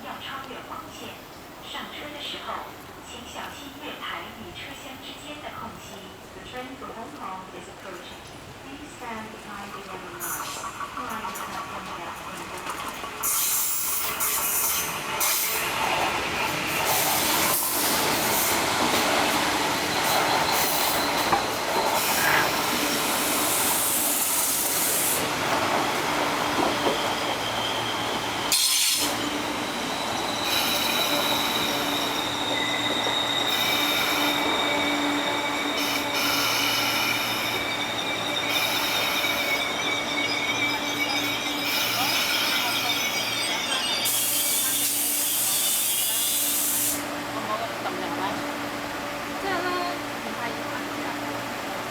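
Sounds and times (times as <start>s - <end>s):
train wheels rumbling on rail: 0.1s - 51.9s
high wheel squeal: 13.2s - 16.0s, 16.6s - 47.0s.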